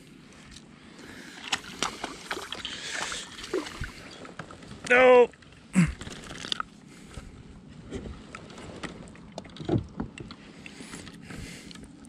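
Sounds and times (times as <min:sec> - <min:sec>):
rush of water and air: 0:01.0 - 0:04.4
gear knocks and clicks: 0:08.2 - 0:12.0.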